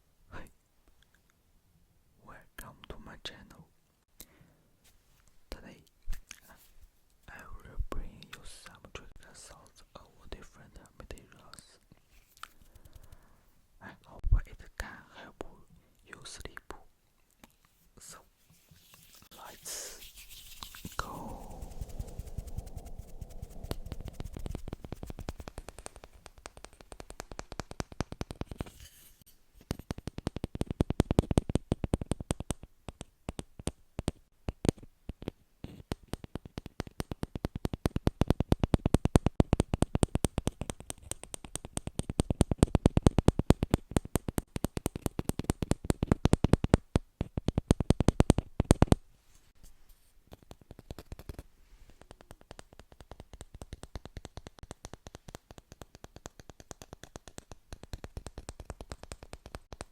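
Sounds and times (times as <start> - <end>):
tapping and scratching on object: 18.6 - 49.0, 50.2 - 59.9.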